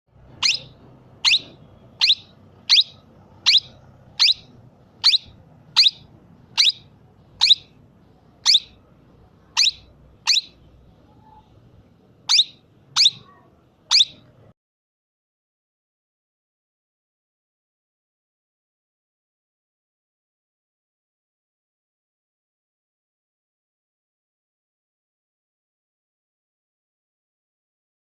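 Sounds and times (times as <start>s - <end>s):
parakeet calling: 0.3s - 11.5s, 12.2s - 14.3s.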